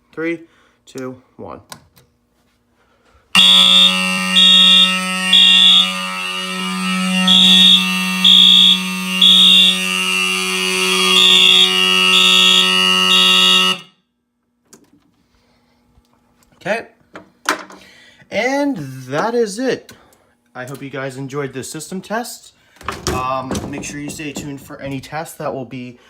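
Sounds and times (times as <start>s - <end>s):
low buzzing alarm horn: 3.3s - 14.1s
high alarm beeps: 3.4s - 13.9s.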